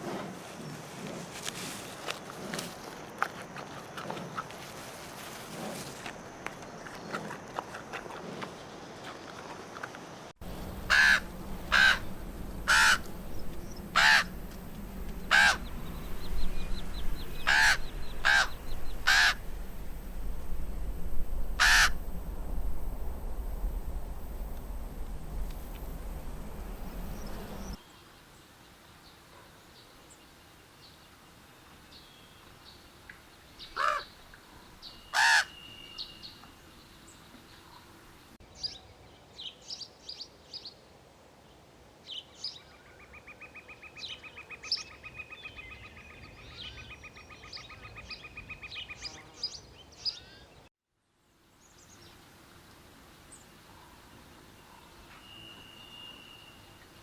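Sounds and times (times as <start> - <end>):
birds calling: 10.4 - 19.7, 21.6 - 22.0, 33.6 - 38.1
low rushing noise: 10.4 - 27.8.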